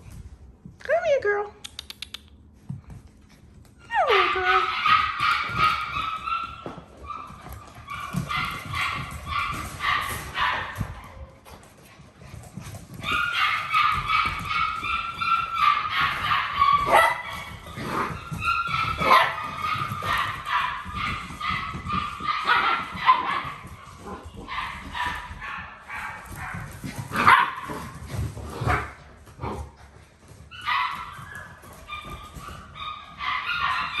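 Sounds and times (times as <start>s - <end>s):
puppies yipping and whimpering: 3.8s - 11.0s, 30.4s - 34.0s.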